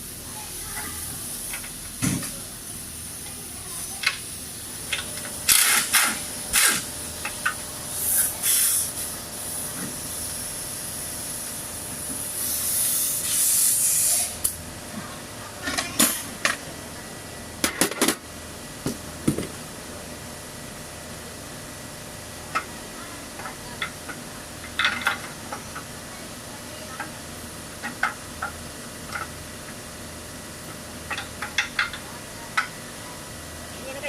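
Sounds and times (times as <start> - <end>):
tools and metal parts clinking: 4.9 - 7.4.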